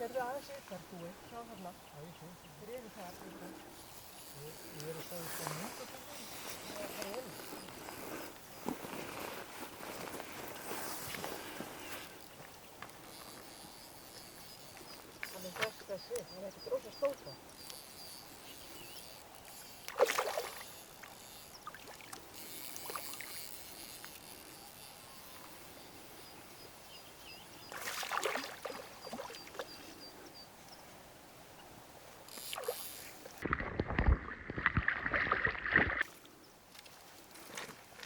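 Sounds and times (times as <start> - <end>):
fish splashing in water: 19.5 - 23.6, 27.7 - 29.7.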